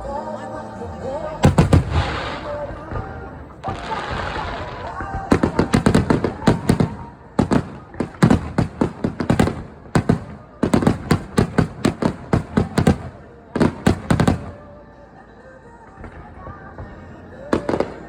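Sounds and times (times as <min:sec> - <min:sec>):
fireworks shell bursts: 0:01.4 - 0:02.9.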